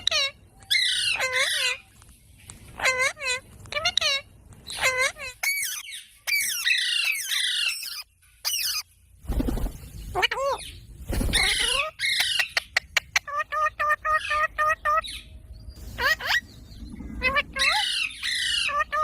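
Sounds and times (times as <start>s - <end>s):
parrots squawking: 0.0s - 1.9s, 2.7s - 8.9s, 10.1s - 19.0s.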